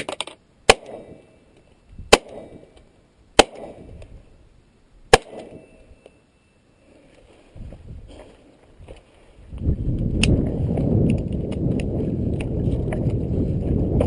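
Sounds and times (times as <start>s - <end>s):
pistol shots with echo: 0.7s - 1.2s, 2.1s - 2.7s, 3.4s - 3.9s, 5.1s - 5.7s.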